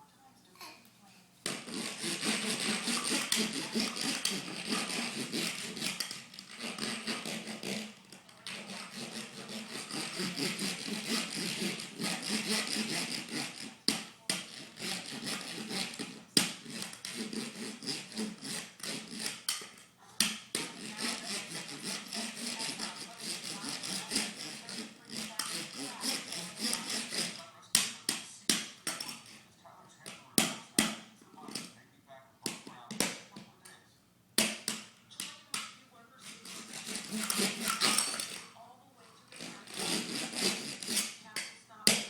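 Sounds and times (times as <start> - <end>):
child making rasping scraping noise: 1.6 - 13.8, 14.4 - 19.4, 20.6 - 27.4, 36.2 - 38.4, 39.4 - 41.2.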